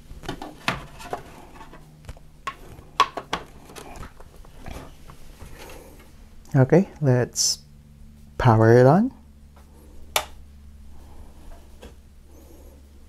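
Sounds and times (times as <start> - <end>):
cables plugging in clicks: 10.1 - 10.4.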